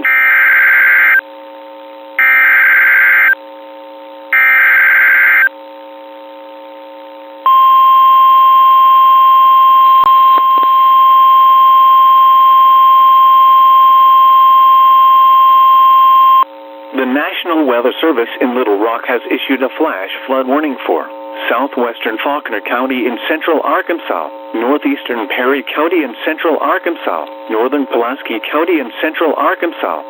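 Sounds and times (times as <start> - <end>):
warning alarm tone: 0.0 - 1.2, 2.2 - 3.4, 4.3 - 5.5, 7.5 - 16.5.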